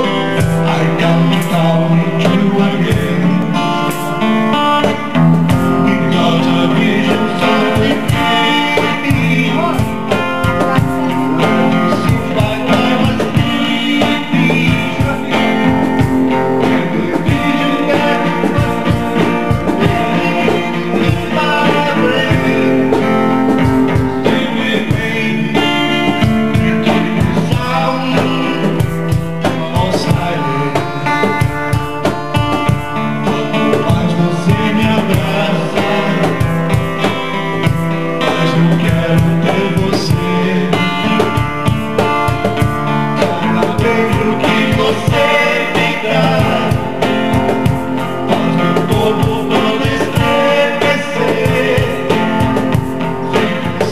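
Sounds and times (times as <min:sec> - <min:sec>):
band playing guitar-led song: 0:00.0 - 0:53.9.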